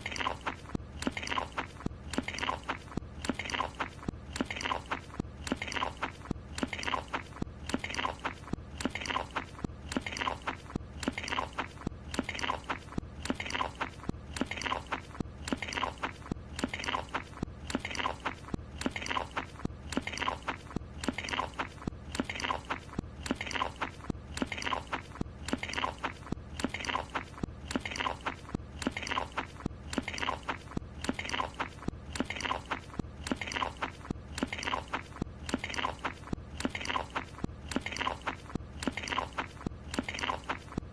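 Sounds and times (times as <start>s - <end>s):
cartoon biting and chewing: 0.0s - 40.9s.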